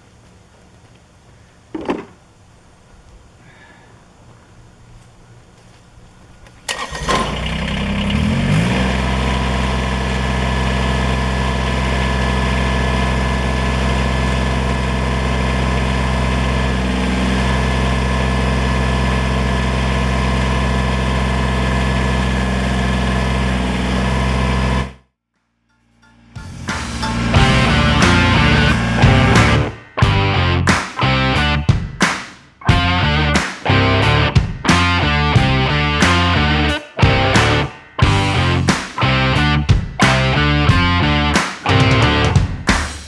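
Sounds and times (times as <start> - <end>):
tractor diesel engine starting and running: 6.7 - 25.0, 26.4 - 31.6, 32.7 - 42.4.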